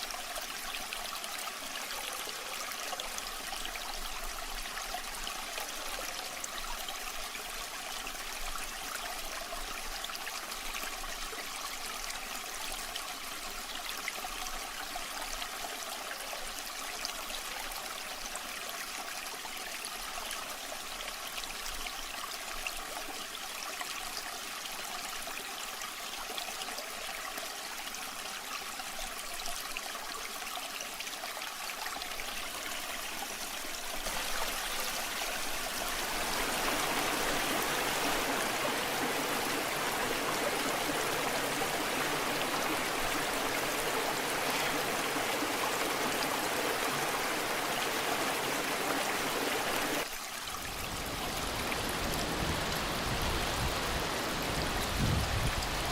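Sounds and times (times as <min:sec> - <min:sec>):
waterfall and stream rushing: 0:31.8 - 0:55.9.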